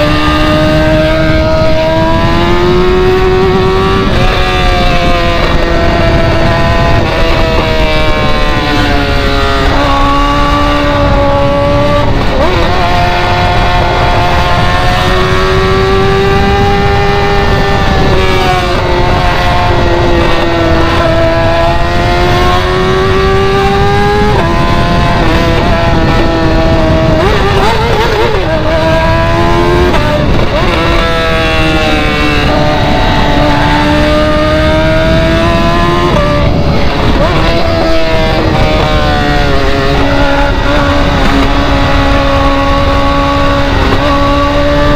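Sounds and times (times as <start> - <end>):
loud car exhaust at high revs: 0.0 - 44.9.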